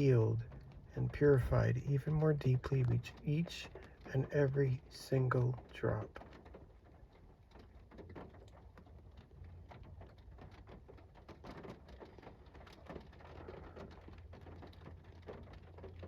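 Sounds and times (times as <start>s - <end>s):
low steady hum: 0.0s - 7.5s
raindrops tapping on window: 0.0s - 16.0s.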